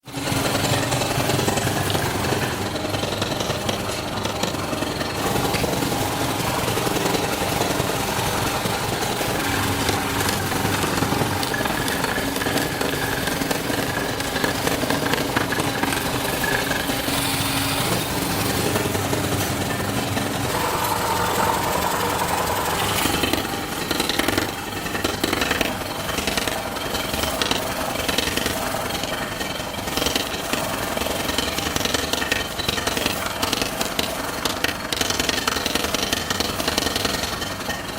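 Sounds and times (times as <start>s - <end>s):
rapid mechanical hammering: 20.4s - 24.7s
motors running: 20.5s - 24.1s.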